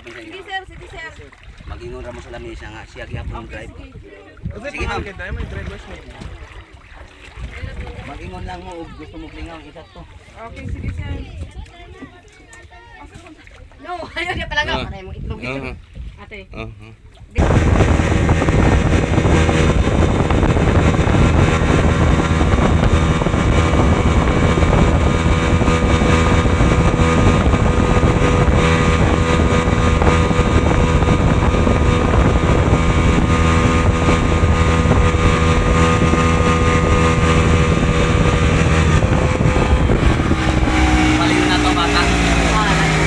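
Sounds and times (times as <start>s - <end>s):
jet ski engine drone: 17.4s - 43.0s.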